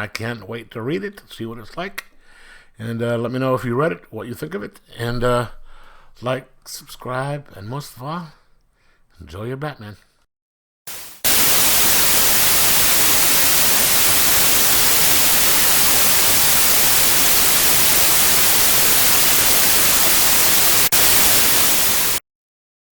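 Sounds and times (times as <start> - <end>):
static white noise hiss: 10.9 - 22.2.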